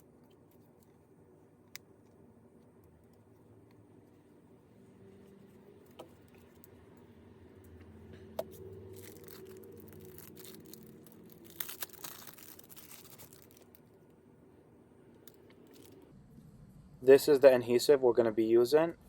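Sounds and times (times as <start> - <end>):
scratching and crunching: 8.4 - 14.0.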